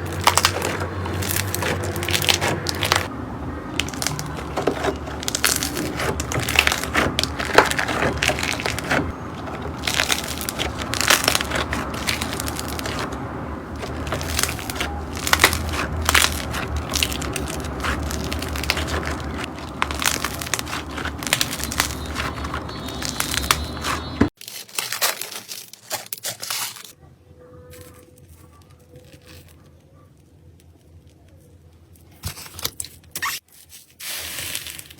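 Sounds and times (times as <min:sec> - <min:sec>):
slime crackling and popping: 0:00.0 - 0:03.1, 0:03.7 - 0:26.9.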